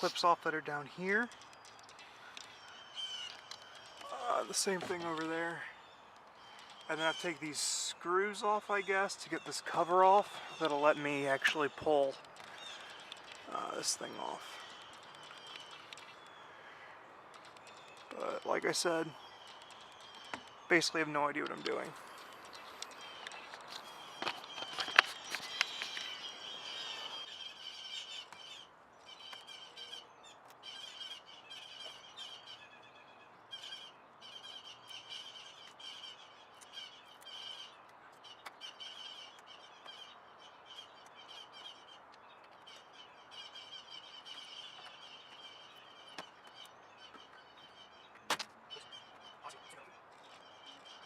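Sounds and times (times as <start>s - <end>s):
small birds chirping: 0.0s - 51.0s
handling noise and clicks: 1.3s - 5.3s, 17.2s - 18.1s, 21.4s - 26.2s.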